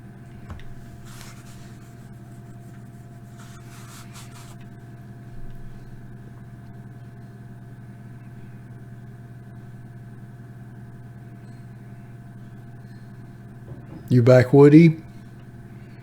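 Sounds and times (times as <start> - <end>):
electrical hum: 0.0 - 16.0
rustling handling noises: 0.3 - 4.8.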